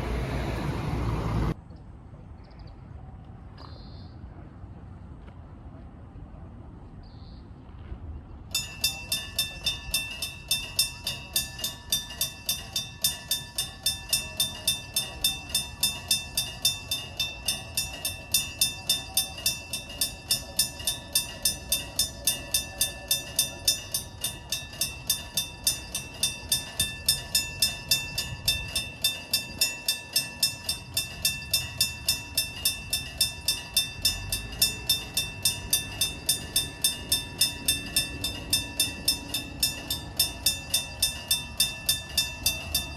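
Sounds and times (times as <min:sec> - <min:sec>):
low rumble of train: 0:00.0 - 0:42.9
railroad crossing bell ringing: 0:08.5 - 0:42.9.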